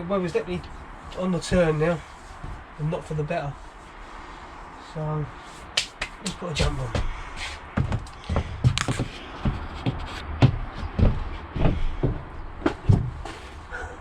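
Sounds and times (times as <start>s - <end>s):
knocks and thuds: 6.0s - 13.4s.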